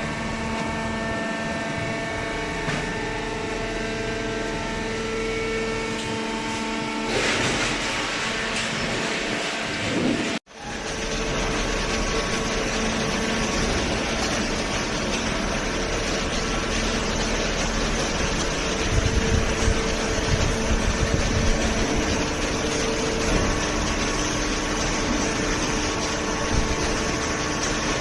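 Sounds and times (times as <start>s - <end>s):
baler machine hum: 0.0s - 28.0s
low rumbling: 7.5s - 28.0s.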